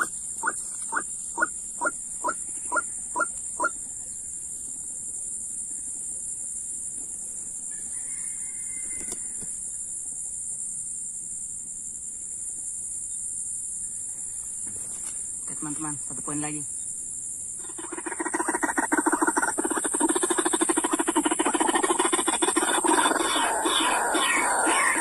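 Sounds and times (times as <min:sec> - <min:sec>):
bird clucking: 0:00.0 - 0:03.8, 0:17.6 - 0:25.0
high-pitched insect drone: 0:00.0 - 0:06.7, 0:07.3 - 0:25.0.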